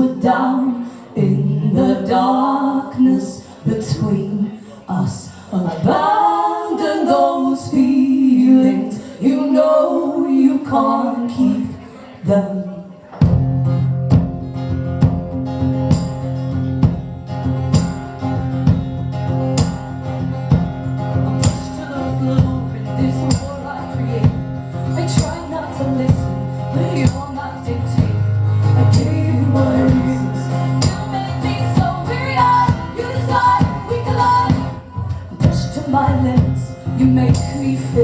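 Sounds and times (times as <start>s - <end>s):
guitar: 0.0s - 38.0s
live band music: 13.2s - 38.0s
sharp percussive hits: 15.9s - 17.2s, 17.8s - 19.0s, 19.6s - 20.8s
person singing: 21.3s - 38.0s.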